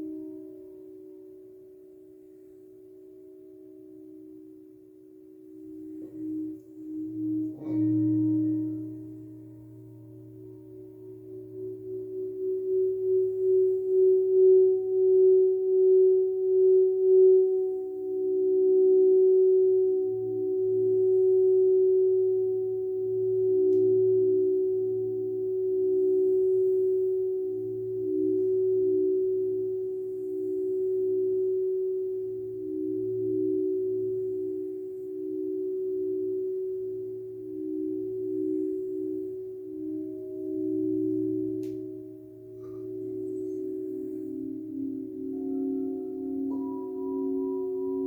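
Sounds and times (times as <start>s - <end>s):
crystal singing bowl tone: 0.0s - 48.0s.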